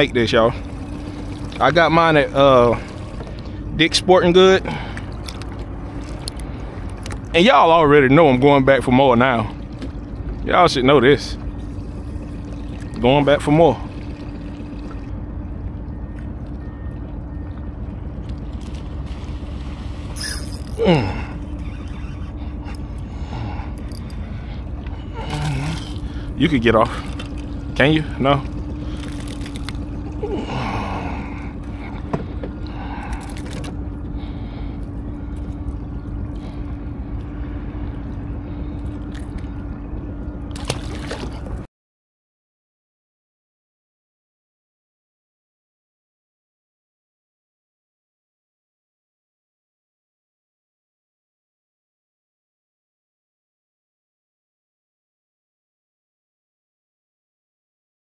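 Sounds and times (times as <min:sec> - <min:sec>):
constant low hum: 0:00.0 - 0:41.7
low rumble: 0:00.0 - 0:41.7.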